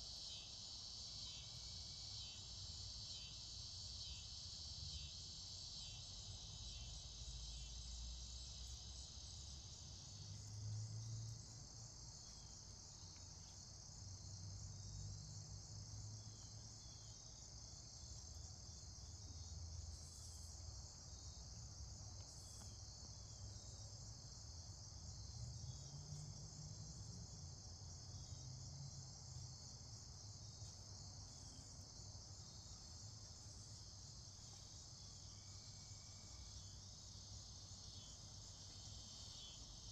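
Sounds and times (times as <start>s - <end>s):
crickets and insects trilling: 0.0s - 39.9s
lower-pitched insect trill: 0.0s - 39.9s.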